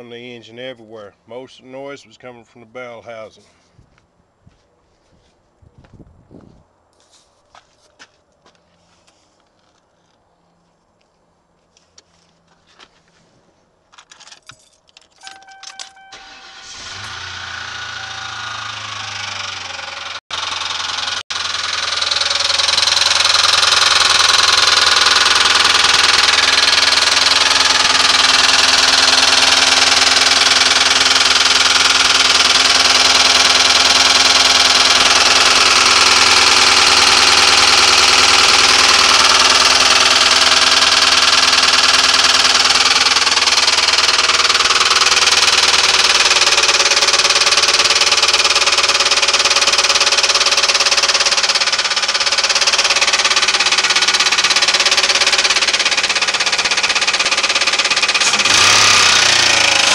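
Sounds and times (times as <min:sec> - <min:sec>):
car engine with loud rattling: 0:15.2 - 0:59.9.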